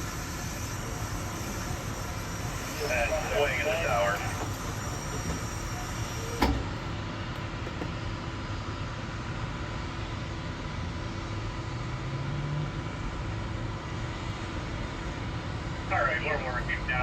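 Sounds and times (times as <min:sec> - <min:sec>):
crane machinery rumble and hiss: 0:00.0 - 0:11.9.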